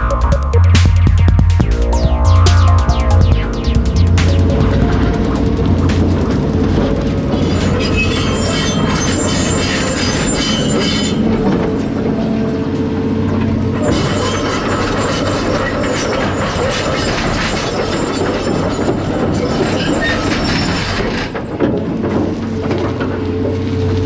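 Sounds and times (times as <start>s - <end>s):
metal clanking and squealing: 6.2s - 21.8s.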